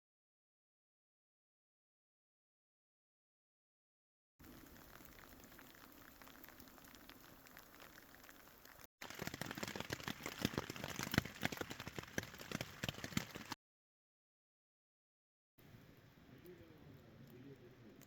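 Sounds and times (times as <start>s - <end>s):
light rain hiss: 4.4s - 13.6s
raindrops tapping on a surface: 4.4s - 13.6s.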